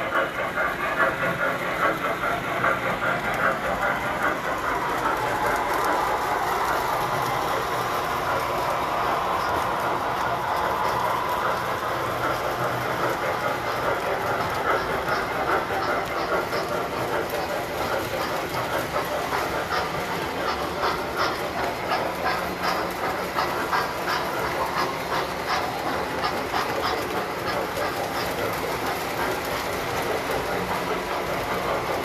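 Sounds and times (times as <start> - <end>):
model train whirring rumble: 0.0 - 32.0
wheels clicking over rail joints: 0.0 - 32.0.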